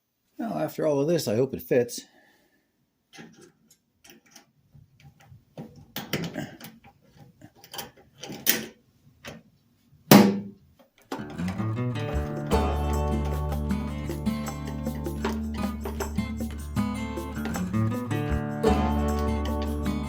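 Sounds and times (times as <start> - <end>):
acoustic guitar music: 11.2 - 20.0.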